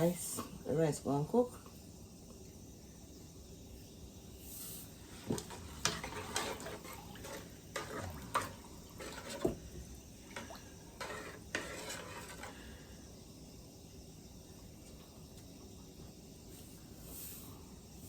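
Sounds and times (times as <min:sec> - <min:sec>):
pots and utensils clattering: 0:05.2 - 0:09.7, 0:10.3 - 0:12.7.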